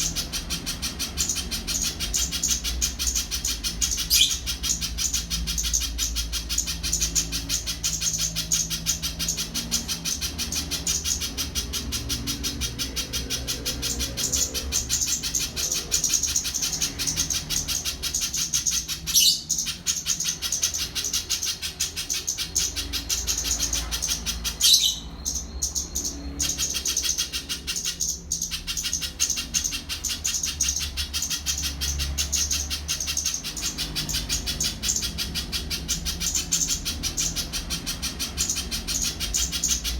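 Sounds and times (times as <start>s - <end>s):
bird singing rapid chatter: 0.0s - 39.9s.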